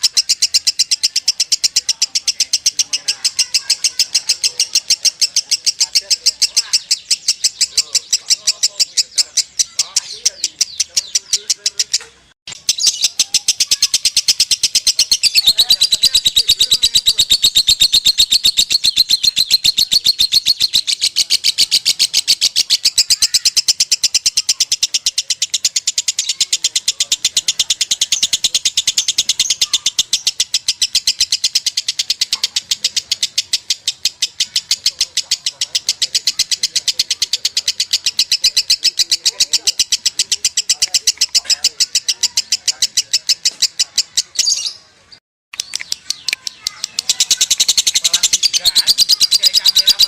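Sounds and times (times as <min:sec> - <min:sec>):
lovebird rapid high chatter: 0:00.0 - 0:50.0.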